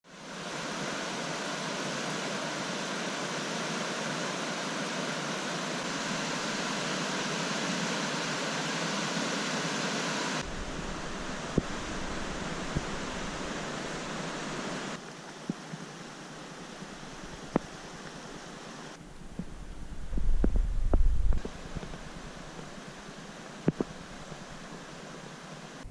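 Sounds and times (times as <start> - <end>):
river rushing: 0.1 - 19.0, 21.4 - 25.9
deep rumble: 10.4 - 14.6, 19.1 - 22.8.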